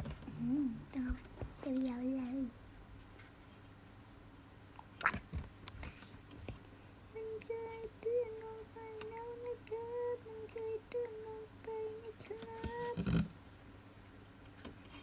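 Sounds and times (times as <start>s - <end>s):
person humming: 0.3s - 2.5s, 7.1s - 13.3s.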